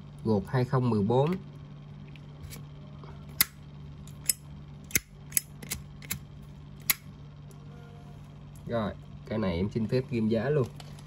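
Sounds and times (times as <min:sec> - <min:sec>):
low steady hum: 0:00.0 - 0:11.0
lighter clicking: 0:04.2 - 0:06.2, 0:06.8 - 0:07.1.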